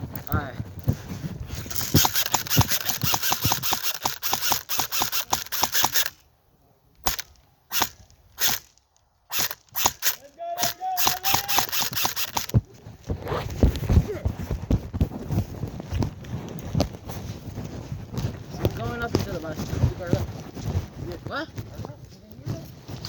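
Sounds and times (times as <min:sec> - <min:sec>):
quick footsteps: 0:00.0 - 0:06.2, 0:09.3 - 0:23.0
sharp clicks: 0:01.7 - 0:06.3, 0:06.9 - 0:12.6.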